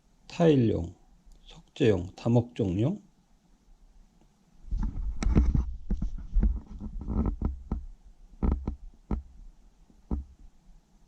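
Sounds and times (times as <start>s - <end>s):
sharp clicks and knocks: 4.8s - 9.4s, 10.0s - 10.5s.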